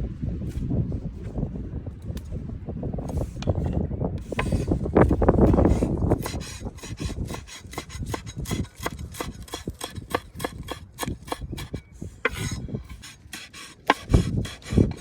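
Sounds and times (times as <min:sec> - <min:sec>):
heavy rubbing: 0:04.2 - 0:15.0
quick scraping strokes: 0:04.2 - 0:15.0.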